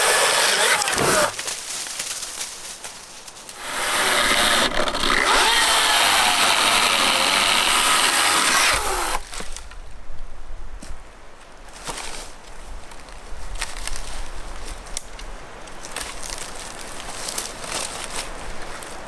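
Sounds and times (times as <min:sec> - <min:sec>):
power tool running: 0:00.0 - 0:01.4, 0:03.6 - 0:09.2.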